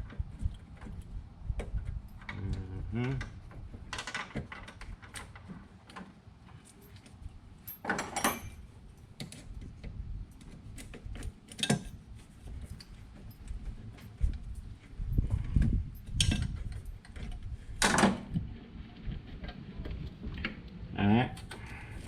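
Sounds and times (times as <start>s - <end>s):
metallic clinks of hand tools: 7.6s - 8.7s.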